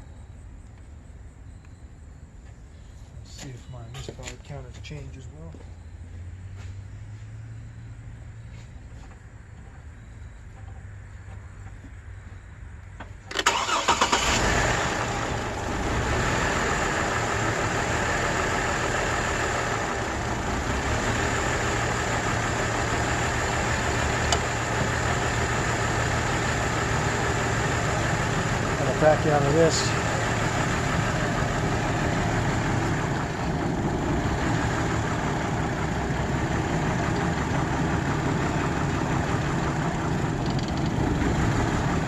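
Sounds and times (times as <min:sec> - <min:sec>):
starter cranking engine: 0:13.3 - 0:15.8, 0:28.1 - 0:30.4, 0:37.1 - 0:42.0
car engine idling with misfire: 0:13.3 - 0:42.0.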